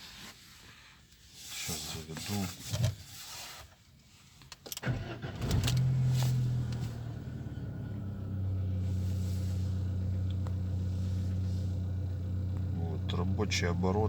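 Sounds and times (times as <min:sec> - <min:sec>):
car starter cranking: 0:04.7 - 0:14.0
car engine idling: 0:04.8 - 0:14.0.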